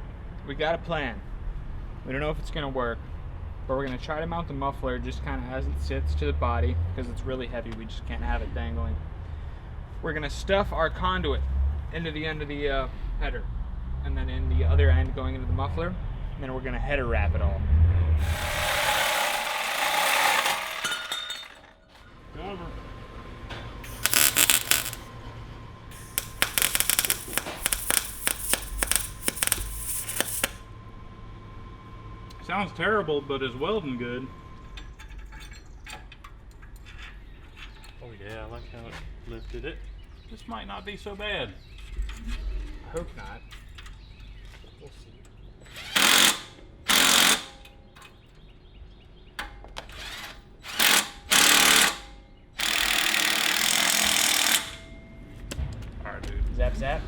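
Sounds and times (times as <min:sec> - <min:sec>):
welding arc crackling: 0:18.2 - 0:20.8, 0:23.8 - 0:25.1, 0:25.9 - 0:30.6.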